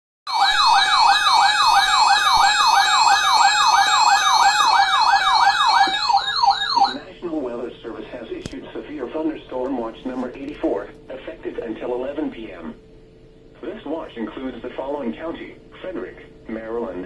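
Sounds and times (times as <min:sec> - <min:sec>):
electronic siren alert tone: 0:00.3 - 0:07.1.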